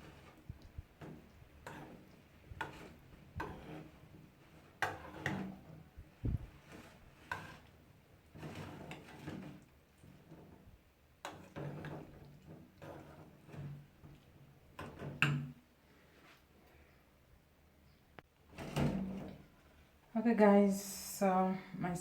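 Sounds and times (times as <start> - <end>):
spoon scraping a mixing bowl: 0.0 - 10.6, 11.2 - 15.5.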